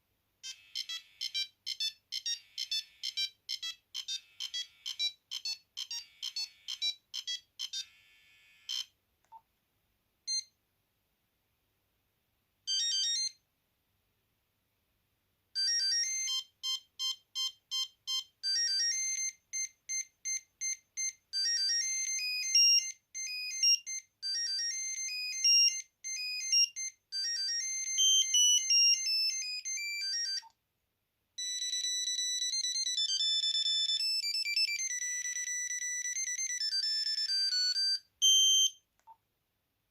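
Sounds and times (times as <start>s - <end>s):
electronic beeping ringtone tunes: 0.4s - 8.9s, 31.4s - 38.8s.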